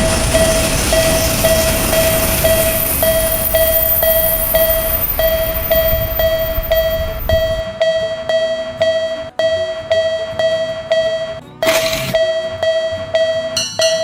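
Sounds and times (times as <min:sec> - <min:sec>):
train rumble: 0:00.0 - 0:07.7
railroad crossing bell ringing: 0:00.0 - 0:11.4, 0:12.2 - 0:14.0.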